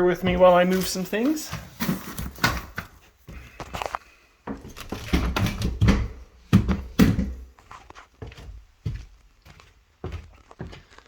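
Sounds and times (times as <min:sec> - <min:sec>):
footsteps stepping down: 0:00.0 - 0:11.0
objects knocking and thudding: 0:00.1 - 0:07.6.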